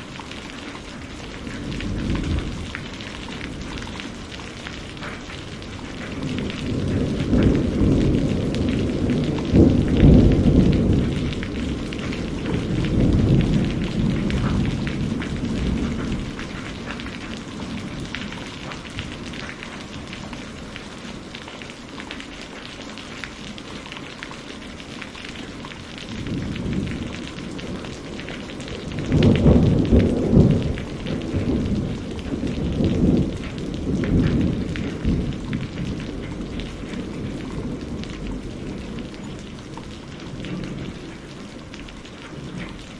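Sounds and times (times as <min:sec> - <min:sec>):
heavy rain: 0:00.0 - 0:42.9
rolling thunder: 0:01.1 - 0:20.8, 0:25.9 - 0:41.4.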